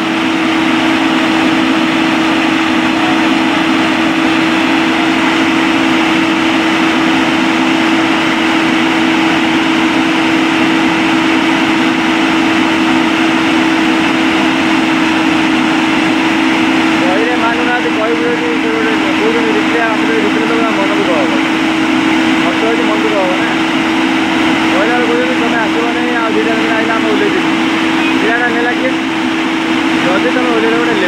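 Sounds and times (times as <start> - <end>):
heavy engine running: 0.0 - 31.0.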